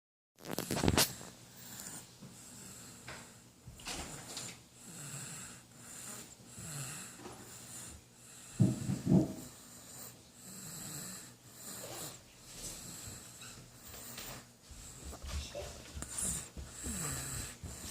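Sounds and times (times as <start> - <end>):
baby snoring: 4.0 - 13.4, 15.1 - 17.9
baby snorting: 4.1 - 13.3, 14.0 - 17.9.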